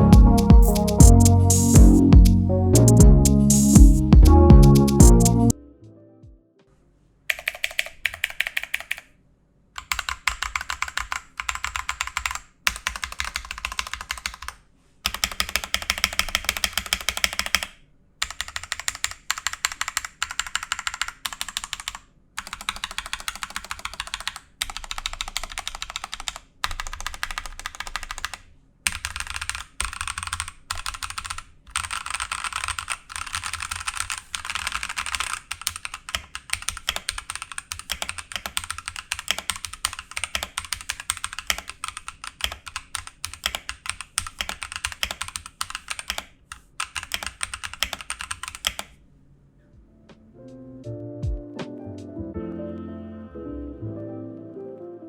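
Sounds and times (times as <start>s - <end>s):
mechanical keyboard typing: 7.3s - 9.1s, 9.8s - 48.9s.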